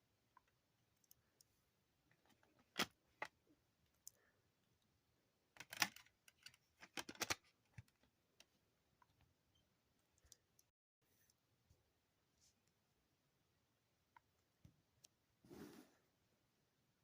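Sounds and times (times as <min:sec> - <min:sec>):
plastic cases clicking: 0:05.6 - 0:08.0.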